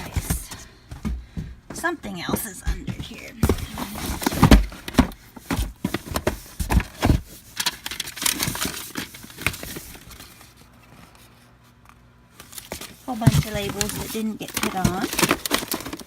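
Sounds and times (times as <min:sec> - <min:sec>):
packaging crinkling and rustling: 0:02.9 - 0:16.0.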